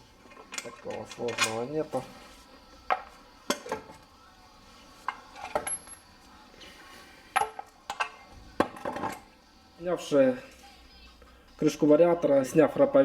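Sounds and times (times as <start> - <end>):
metal tools clinking: 0.5 - 1.7.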